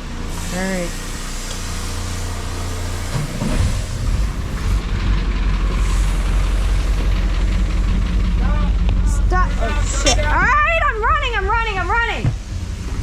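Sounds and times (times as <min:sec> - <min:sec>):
boat engine running: 0:02.8 - 0:10.7.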